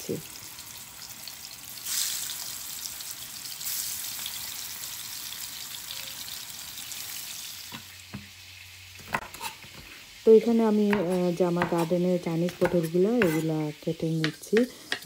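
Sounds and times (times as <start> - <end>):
fish sizzling in hot oil: 0.0 - 11.6.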